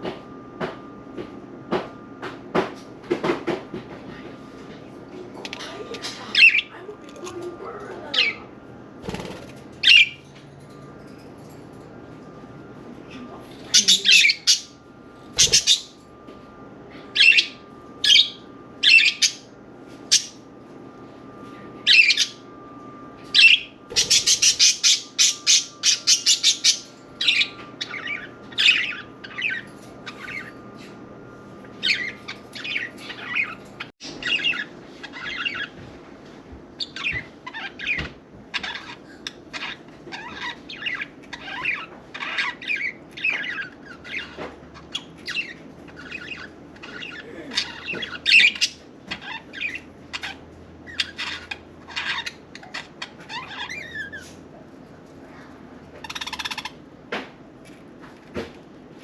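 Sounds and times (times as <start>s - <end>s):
budgerigars squawking and chirping: 5.7s - 6.8s, 13.7s - 14.8s, 15.4s - 16.0s, 17.2s - 19.5s, 21.9s - 22.4s, 23.4s - 30.6s, 31.8s - 35.7s, 36.8s - 54.4s, 56.0s - 56.8s.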